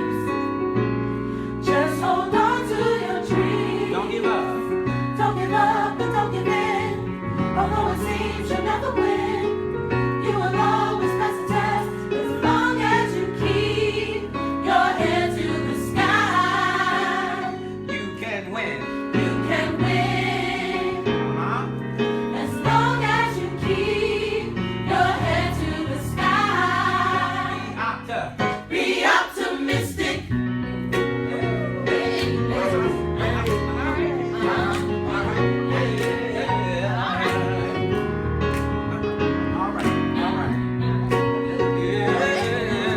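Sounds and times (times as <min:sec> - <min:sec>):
gospel choir singing: 0:00.0 - 0:42.9
band with bass line: 0:30.0 - 0:42.9.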